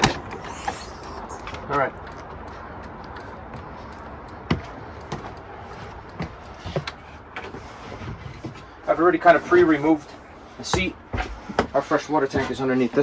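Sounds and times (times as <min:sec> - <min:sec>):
scattered knocks and clicks: 0:00.0 - 0:08.6.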